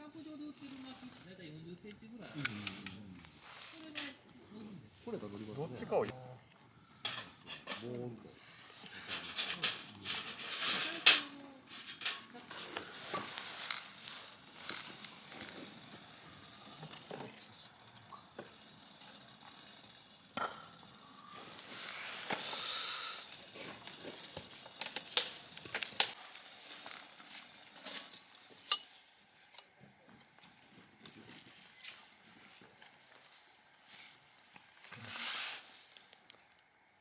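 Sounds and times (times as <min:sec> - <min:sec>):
wood fire crackling: 0:00.2 - 0:36.8
fire hissing: 0:00.3 - 0:01.6, 0:02.4 - 0:29.5, 0:31.5 - 0:36.6
fire popping: 0:08.7 - 0:28.8.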